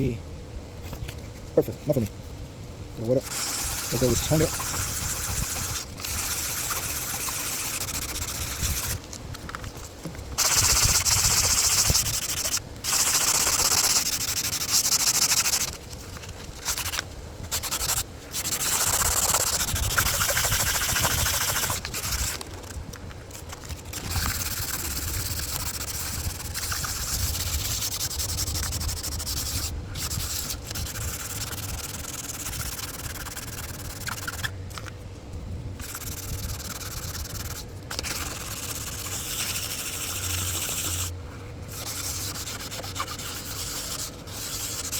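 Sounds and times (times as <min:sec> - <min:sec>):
sandpaper rubbing by hand: 0:03.0 - 0:09.0, 0:10.4 - 0:22.8, 0:23.4 - 0:34.5, 0:35.8 - 0:41.1, 0:41.7 - 0:44.9.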